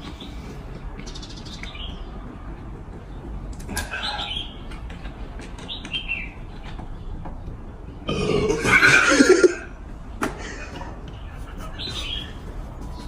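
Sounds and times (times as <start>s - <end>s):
person burping: 8.0s - 9.7s.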